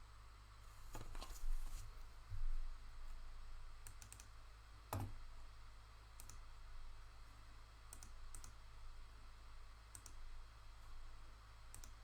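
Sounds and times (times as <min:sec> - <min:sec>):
faint clicks: 0:11.7 - 0:12.0.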